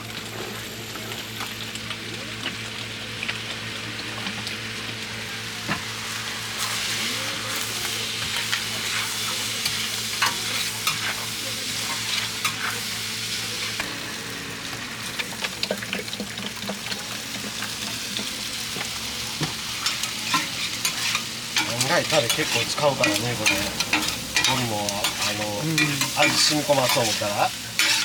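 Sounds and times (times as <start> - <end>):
meat sizzling on a griddle: 0.0 - 28.0
metal spatulas scraping: 19.8 - 28.0.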